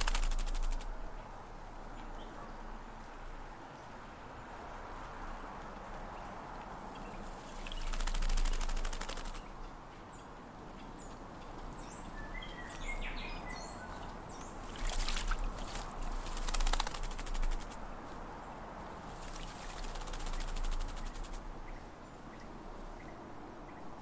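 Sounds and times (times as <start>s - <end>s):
wing flapping and splashing: 0.0s - 1.1s, 6.9s - 9.6s, 14.0s - 21.8s
bird chirping: 6.9s - 18.6s.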